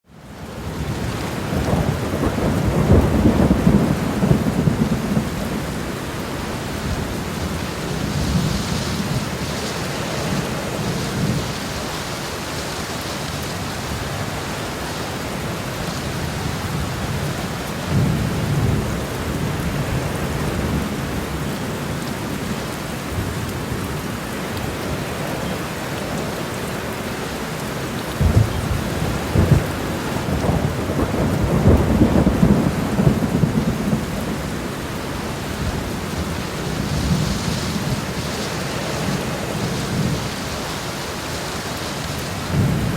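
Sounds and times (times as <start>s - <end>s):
heavy rain pouring on road: 0.0s - 42.9s.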